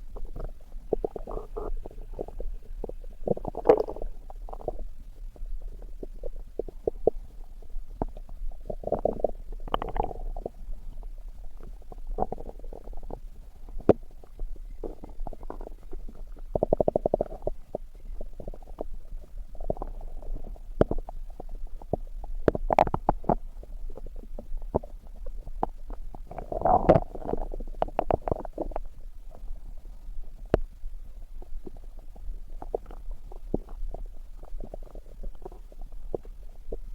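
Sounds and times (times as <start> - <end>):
bubbling rattle: 0.0 - 30.5, 31.2 - 36.9
stomach growling and gurgling: 0.0 - 36.9.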